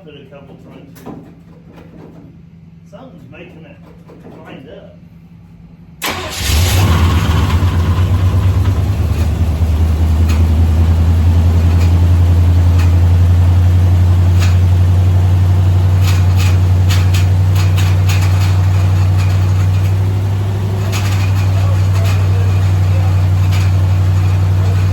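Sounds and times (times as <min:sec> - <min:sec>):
car engine starting and idling: 0:06.0 - 0:24.9.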